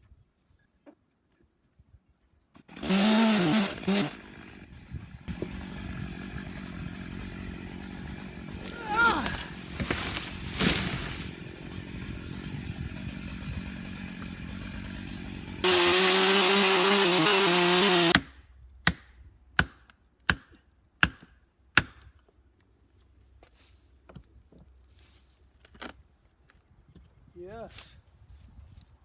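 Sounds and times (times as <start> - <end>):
chainsaw running and revving: 2.6 - 18.2.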